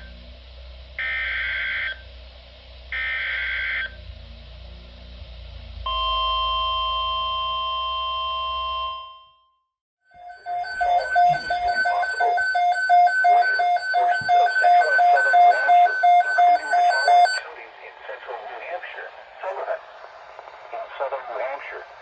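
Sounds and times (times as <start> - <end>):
steady attention tone: 5.7 - 9.1, 10.1 - 22.0
data tone bursts: 10.2 - 17.4
pulsing electronic alert beep: 10.2 - 17.4.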